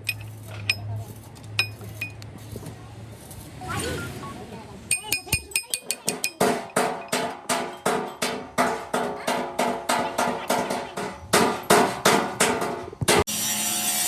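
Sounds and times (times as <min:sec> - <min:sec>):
hammer ringing on metal: 0:04.9 - 0:13.3.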